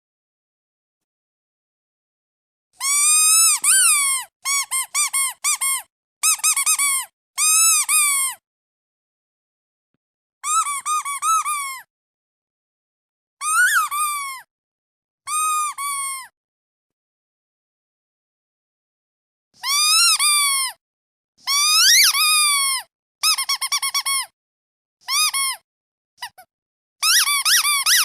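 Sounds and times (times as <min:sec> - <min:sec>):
squeaky duck toy squeaking: 0:02.8 - 0:08.4, 0:10.4 - 0:11.9, 0:13.4 - 0:14.5, 0:15.3 - 0:16.3, 0:19.6 - 0:20.8, 0:21.4 - 0:24.3, 0:25.0 - 0:25.6, 0:26.2 - 0:28.0.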